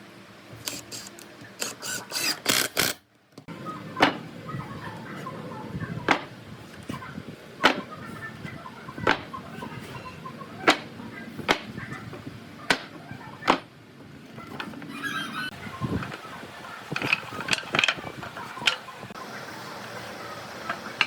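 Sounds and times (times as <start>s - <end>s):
chickens clucking: 3.5s - 13.5s, 14.2s - 21.0s.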